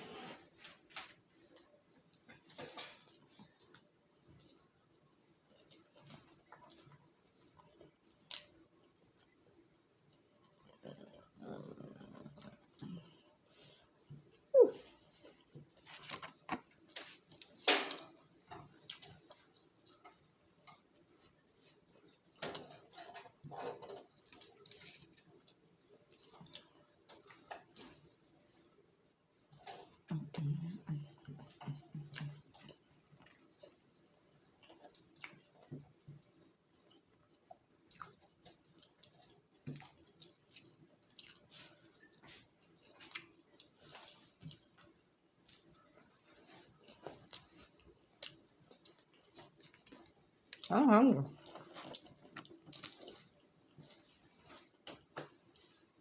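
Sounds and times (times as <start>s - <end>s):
chewing and mouth smacks: 1.5s - 9.4s, 18.5s - 23.0s, 23.6s - 28.0s, 31.1s - 50.7s, 51.3s - 55.8s
food packaging rustling: 15.3s - 25.4s.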